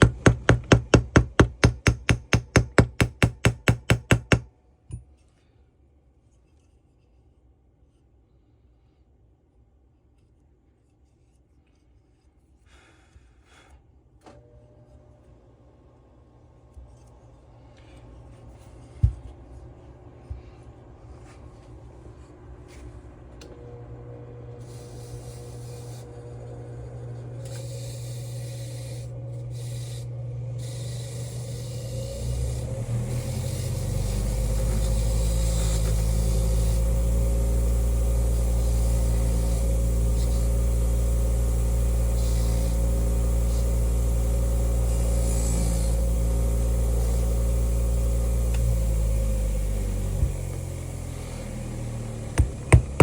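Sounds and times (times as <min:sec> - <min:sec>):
electric motor humming: 0:00.0 - 0:04.4, 0:23.5 - 0:53.0.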